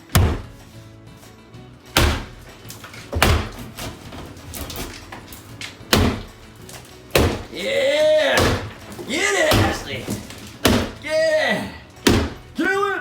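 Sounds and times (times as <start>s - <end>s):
faint music: 0.0s - 13.0s
heavy blows against a wall: 5.8s - 11.1s, 12.0s - 12.6s.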